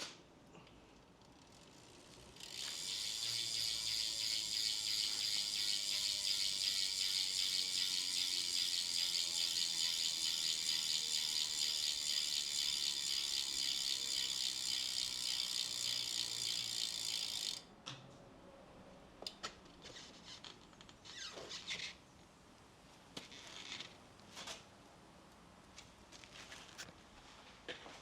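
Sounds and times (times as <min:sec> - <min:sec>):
bicycle freehub ratcheting buzz: 0:01.2 - 0:17.7.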